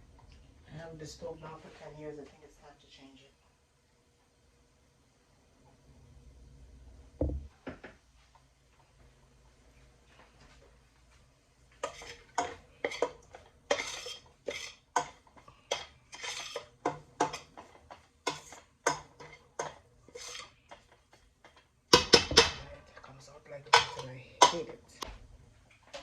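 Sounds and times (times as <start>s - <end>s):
spoon scraping cooking pot: 11.8s - 21.7s.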